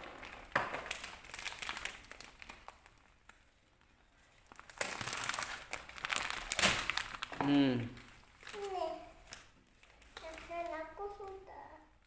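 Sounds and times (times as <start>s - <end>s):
plastic packaging crinkling: 0.0s - 11.7s.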